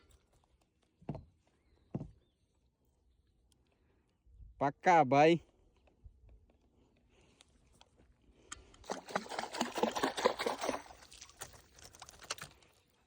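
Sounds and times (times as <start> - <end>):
water splashing and dripping: 8.8 - 12.8.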